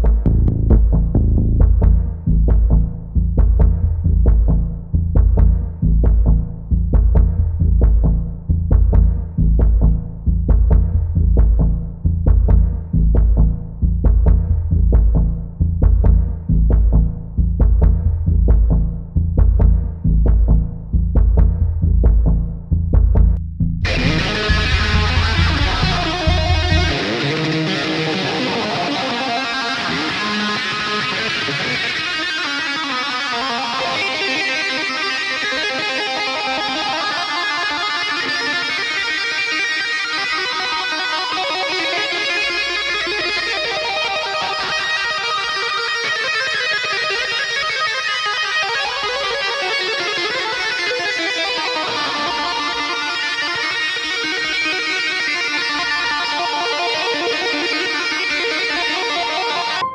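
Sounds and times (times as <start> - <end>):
heavy low bass: 0.0 - 28.7
experimental music with quick notes: 0.0 - 59.9.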